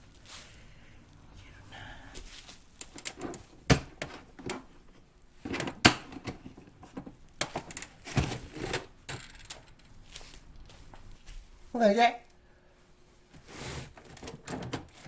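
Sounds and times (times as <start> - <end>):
soft rustling: 0.0 - 5.5, 9.7 - 11.8.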